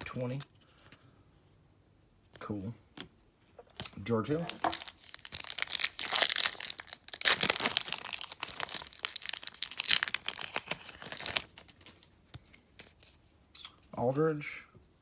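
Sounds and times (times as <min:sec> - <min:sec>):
wrapper tearing and crinkling: 0:04.4 - 0:12.1.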